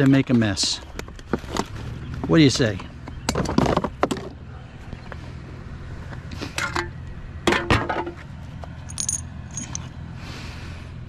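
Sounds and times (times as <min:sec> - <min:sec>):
scrap metal clanking and rattling: 0:06.5 - 0:08.2
metallic ring: 0:08.8 - 0:09.9
light metal clinks: 0:08.8 - 0:10.0.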